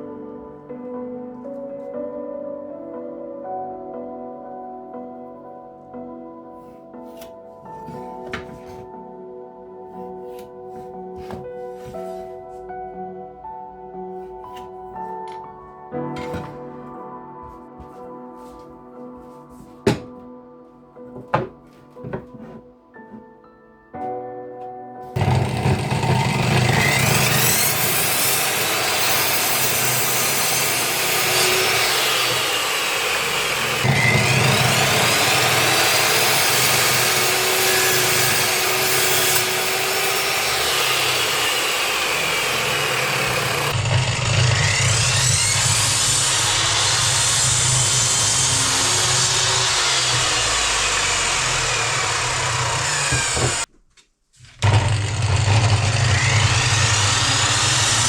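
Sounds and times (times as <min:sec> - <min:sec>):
power saw cutting wood: 0:25.2 - 0:53.7, 0:54.5 - 0:58.0.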